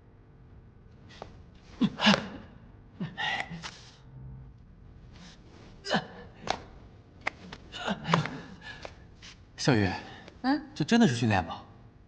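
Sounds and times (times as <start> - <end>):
person gasping breaths: 7.7 - 9.0.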